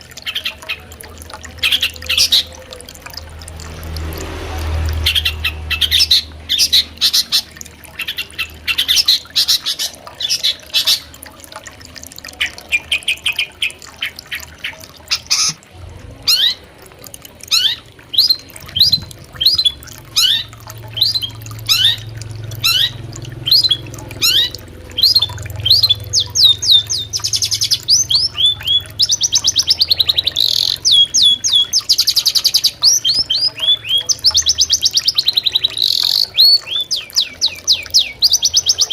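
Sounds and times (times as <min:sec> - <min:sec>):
shrike calling: 0:17.5 - 0:38.9.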